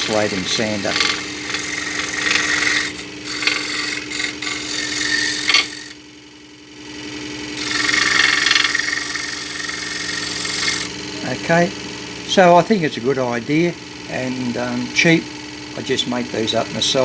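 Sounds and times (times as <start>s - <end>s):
sanding strip rasping on wood: 0.0s - 6.0s, 7.6s - 10.9s
scroll saw humming: 0.0s - 17.0s.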